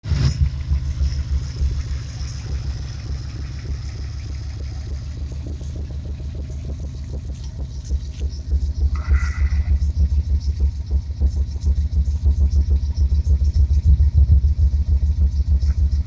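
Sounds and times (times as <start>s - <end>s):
car engine idling roughly: 0.0s - 16.0s.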